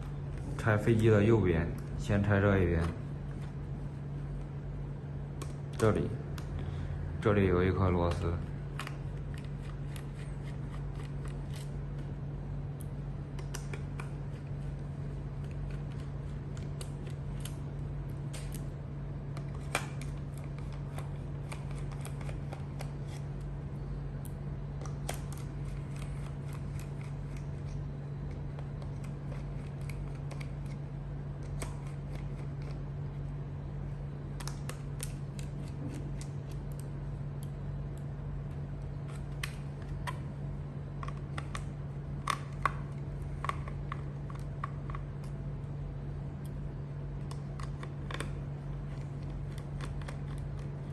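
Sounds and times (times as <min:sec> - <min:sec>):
steady low hum: 0:00.0 - 0:50.9.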